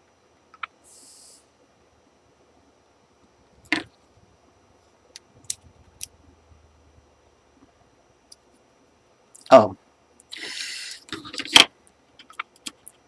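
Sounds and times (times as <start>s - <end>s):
faint hiss: 0.6s - 1.7s, 9.6s - 11.2s.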